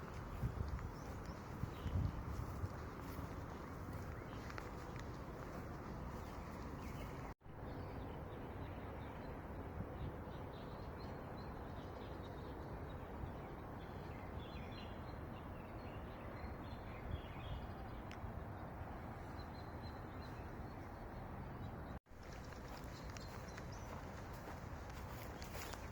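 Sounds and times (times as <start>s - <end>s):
small birds chirping: 0.0s - 9.2s, 10.2s - 25.9s.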